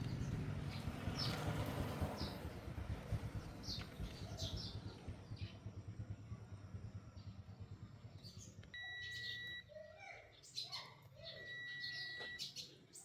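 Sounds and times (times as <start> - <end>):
bird chirps: 8.2 - 9.7, 10.4 - 13.0.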